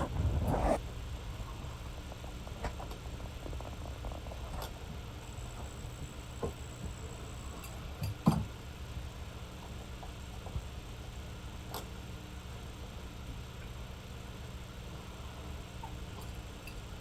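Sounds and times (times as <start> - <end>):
steady low hum: 0.0 - 7.7.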